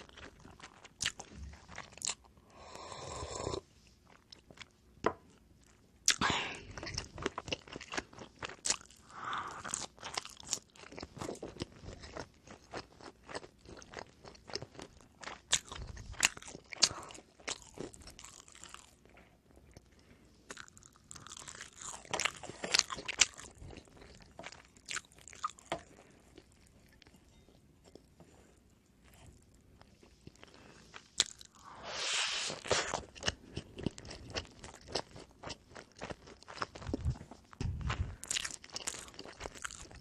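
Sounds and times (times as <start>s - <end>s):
crunchy bread chewing: 0.0s - 2.4s, 4.1s - 31.8s, 32.5s - 40.0s
soft mouth sounds: 2.0s - 3.7s.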